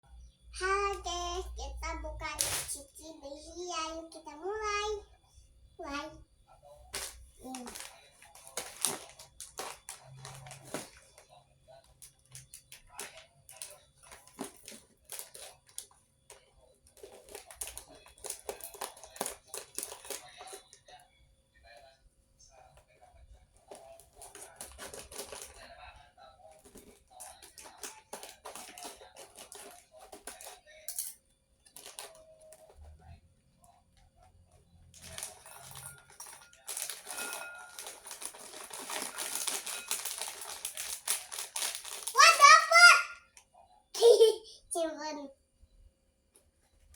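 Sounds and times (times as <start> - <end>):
plastic packets crinkling: 6.9 - 11.3, 11.9 - 20.7, 23.7 - 25.7, 26.6 - 30.6, 31.7 - 32.8, 35.0 - 42.9.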